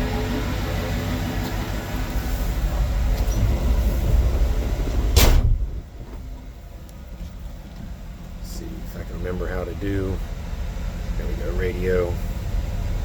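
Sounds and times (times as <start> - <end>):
engine rumbling: 0.0 - 13.0
car door slamming: 5.0 - 6.4.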